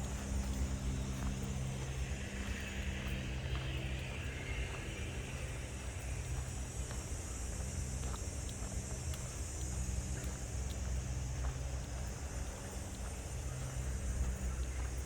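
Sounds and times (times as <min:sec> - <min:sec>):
faint ticks: 0:05.4 - 0:15.0.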